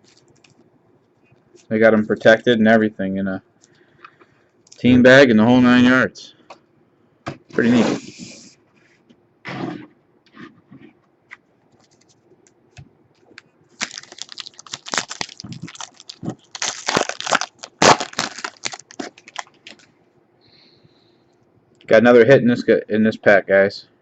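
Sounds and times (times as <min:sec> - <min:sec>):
wrapper tearing and crinkling: 0:13.8 - 0:19.9.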